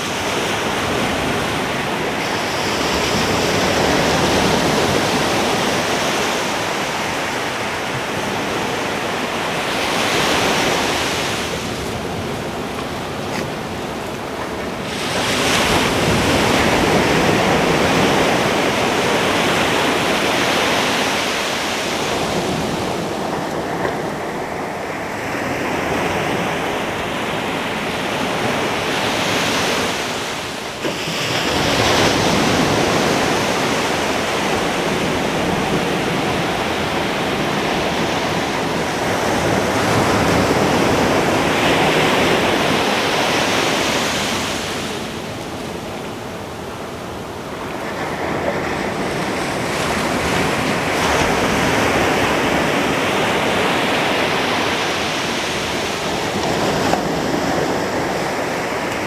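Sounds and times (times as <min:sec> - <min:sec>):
ocean waves crashing: 0:00.0 - 0:59.0
wind on microphone: 0:00.0 - 0:59.0.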